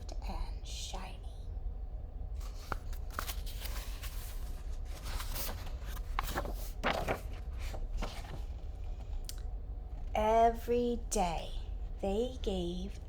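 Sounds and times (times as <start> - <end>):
steady low hum: 0.0 - 13.0
book pages rustling and turning: 2.4 - 9.2.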